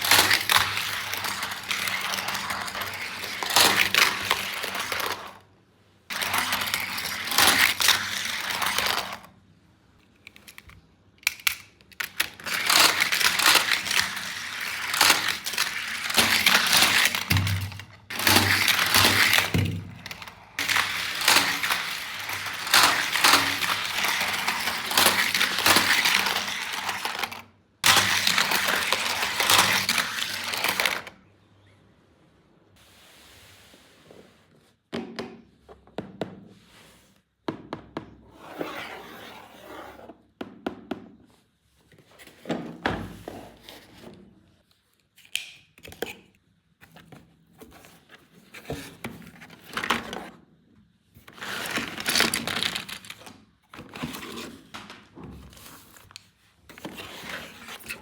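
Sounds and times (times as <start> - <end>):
packaging crackling and crinkling: 0.0 - 5.4, 11.9 - 31.2, 51.2 - 54.9.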